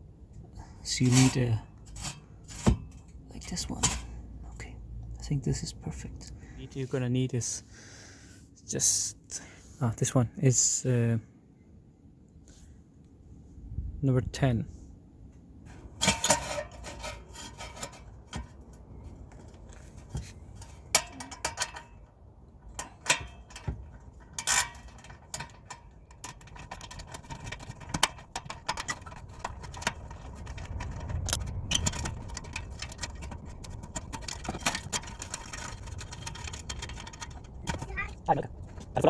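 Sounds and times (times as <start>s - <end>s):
wrench clicking and scraping metal: 1.0s - 3.1s, 16.0s - 38.1s.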